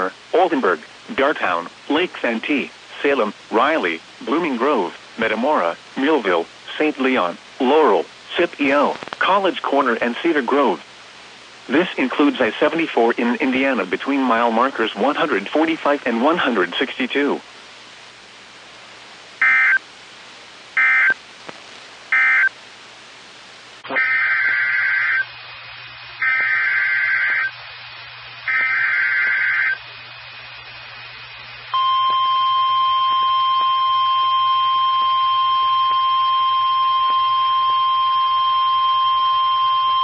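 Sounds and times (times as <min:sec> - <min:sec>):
steady warning alarm tone: 0:19.4 - 0:19.8, 0:20.8 - 0:21.2, 0:22.1 - 0:22.5, 0:23.9 - 0:25.3, 0:26.2 - 0:27.5, 0:28.5 - 0:29.8, 0:31.7 - 0:40.0
warbling data bursts: 0:19.4 - 0:19.8, 0:26.2 - 0:27.5, 0:28.4 - 0:29.8.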